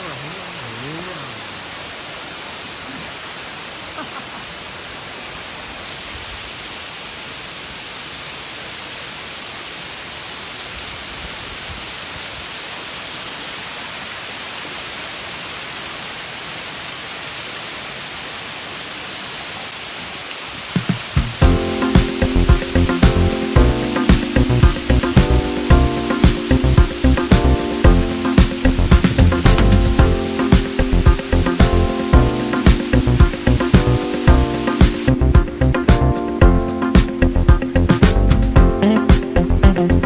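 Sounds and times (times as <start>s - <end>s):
waterfall rushing: 0.0s - 40.0s.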